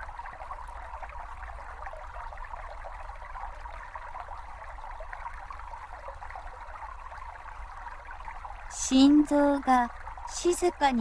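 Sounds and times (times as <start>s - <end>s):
brook babbling over stones: 0.0s - 11.0s.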